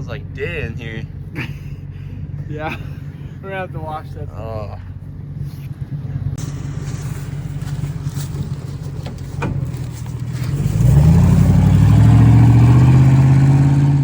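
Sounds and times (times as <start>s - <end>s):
engine running and revving: 4.9s - 14.0s.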